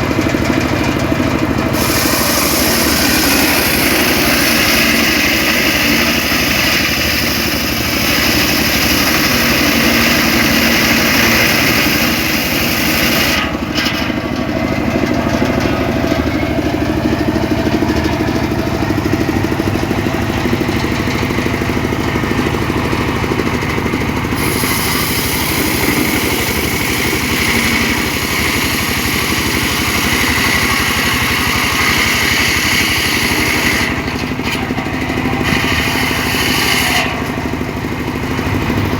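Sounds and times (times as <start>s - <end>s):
engine running: 0.0s - 38.9s
circular saw hiss: 1.8s - 13.4s, 24.4s - 33.9s.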